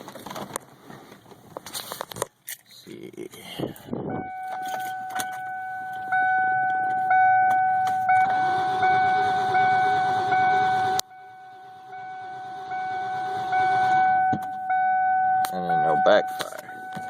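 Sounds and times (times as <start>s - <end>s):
high electronic warning tone: 4.0s - 17.0s.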